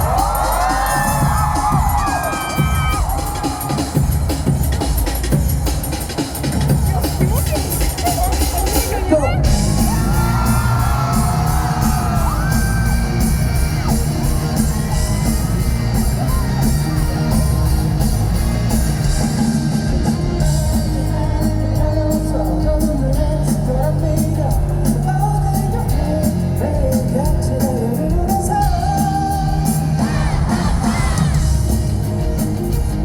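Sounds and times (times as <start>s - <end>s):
cymbals crashing: 0.0s - 19.9s
live rock band playing: 0.0s - 33.0s
person singing: 19.5s - 31.6s.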